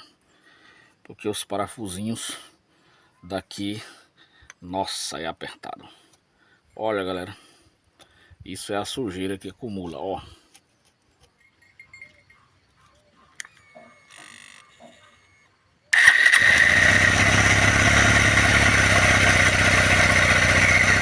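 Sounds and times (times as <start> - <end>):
motor running loud: 16.3 - 21.0.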